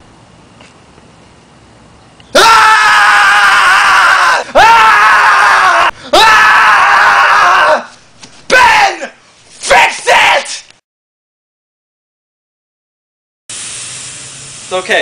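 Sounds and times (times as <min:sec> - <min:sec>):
man screaming in panic: 0:02.4 - 0:07.9, 0:08.5 - 0:10.6.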